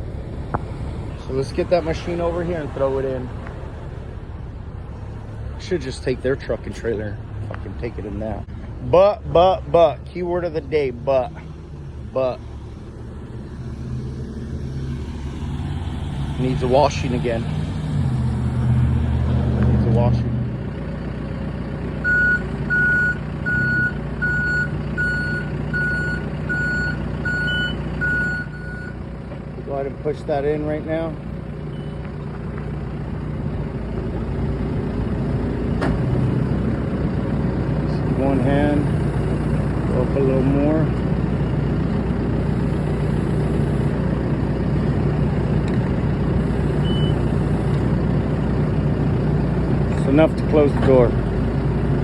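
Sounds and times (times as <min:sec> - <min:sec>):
low engine sound: 0:00.0 - 0:52.0
backup alarm beeping: 0:22.0 - 0:28.9, 0:46.6 - 0:47.3.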